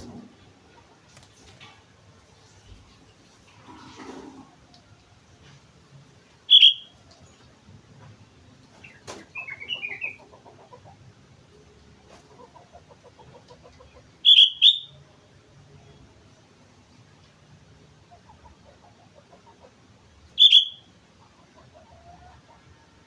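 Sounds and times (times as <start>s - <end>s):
bulbul calling: 6.5s - 6.9s, 8.8s - 10.3s, 14.2s - 15.0s, 20.4s - 20.9s
faint rapid bird trilling: 6.5s - 7.0s, 14.2s - 15.0s, 20.4s - 20.9s.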